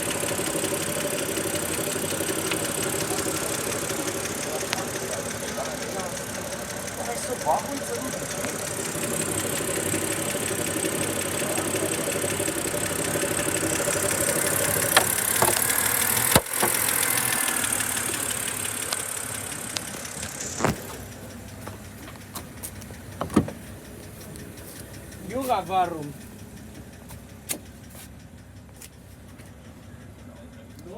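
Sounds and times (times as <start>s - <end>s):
car engine idling with ticking: 0.0s - 30.9s
sharp engine clacks: 0.0s - 30.9s.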